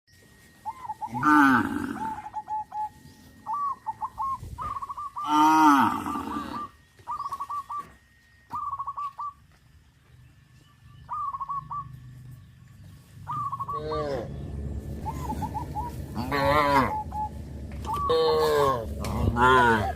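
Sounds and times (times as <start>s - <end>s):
birds chirping: 0.1s - 19.9s
cattle mooing: 1.1s - 2.3s, 5.2s - 6.8s, 16.1s - 17.0s, 17.9s - 19.9s.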